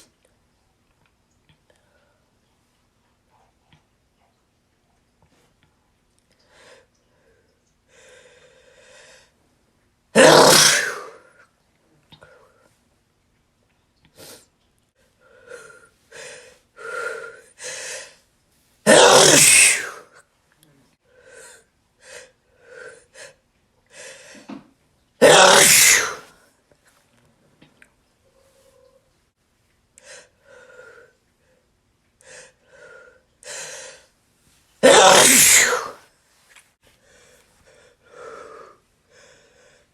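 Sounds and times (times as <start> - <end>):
person sneezing: 10.2 - 11.2, 18.8 - 20.1, 25.2 - 26.3, 34.8 - 36.0
person gasping before sneeze: 25.2 - 26.3, 34.8 - 36.0.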